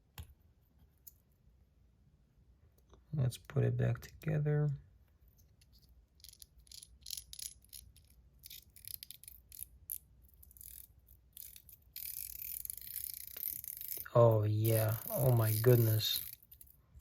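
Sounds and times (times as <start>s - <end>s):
small metal parts clicking: 6.2s - 16.8s.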